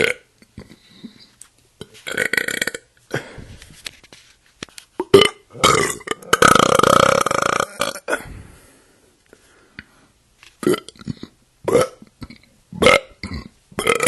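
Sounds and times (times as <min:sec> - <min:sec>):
person belching: 0:00.0 - 0:00.7, 0:02.0 - 0:02.9, 0:05.0 - 0:08.2, 0:10.6 - 0:14.0.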